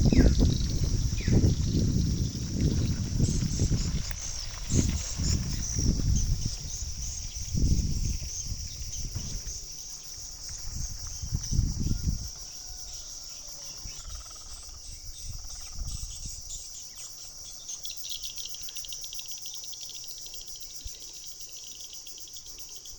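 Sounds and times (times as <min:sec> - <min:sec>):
low rumbling thumps: 0:00.0 - 0:12.2
insects chirping: 0:00.0 - 0:22.9.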